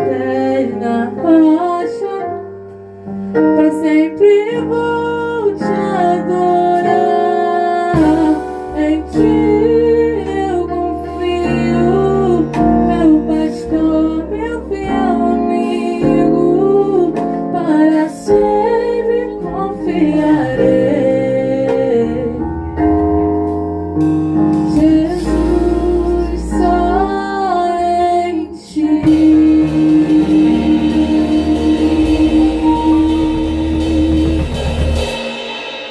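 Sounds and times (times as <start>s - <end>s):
keyboard chords: 0.0s - 35.9s
person singing: 3.5s - 22.6s, 24.7s - 34.8s
drums and cymbals: 6.8s - 21.9s, 23.4s - 27.5s, 29.0s - 35.9s
guitar chords: 28.4s - 35.9s.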